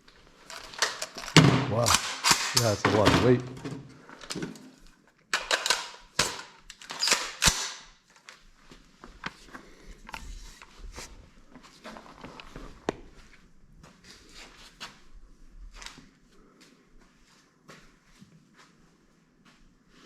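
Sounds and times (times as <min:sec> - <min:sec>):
gunshots indoors: 0:01.4 - 0:03.0, 0:05.4 - 0:08.0.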